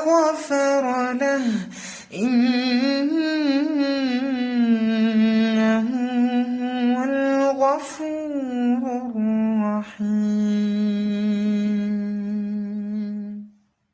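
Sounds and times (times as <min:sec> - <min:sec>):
man reciting melodically: 0:00.0 - 0:13.2.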